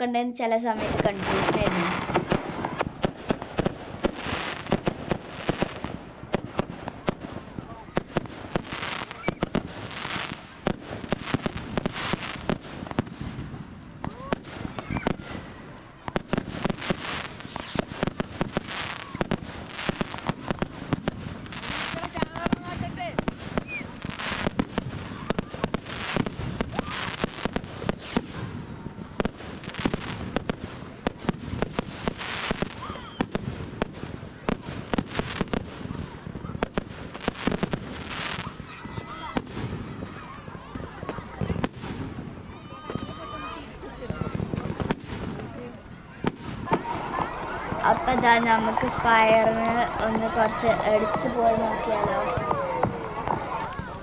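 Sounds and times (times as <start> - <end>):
fireworks bangs and pops: 0.6 - 54.0
fireworks crackling hiss: 0.8 - 15.5, 16.1 - 28.4, 36.8 - 38.6.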